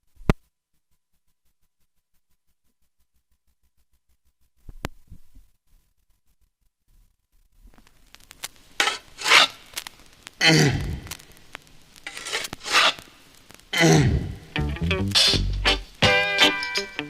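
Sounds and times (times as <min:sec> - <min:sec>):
rasping scraping percussion: 0:12.1 - 0:13.0, 0:14.8 - 0:15.8.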